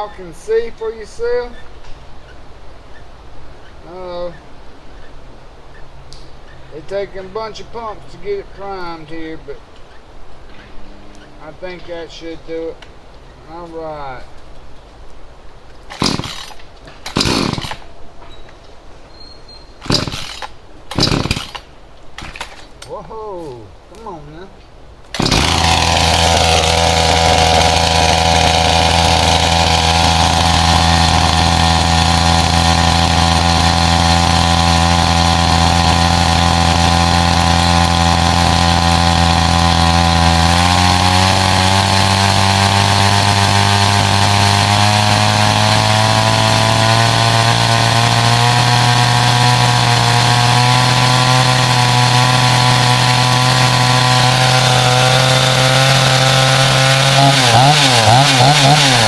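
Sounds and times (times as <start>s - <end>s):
chainsaw idling: 15.8s - 18.0s, 19.8s - 24.4s, 25.1s - 59.0s.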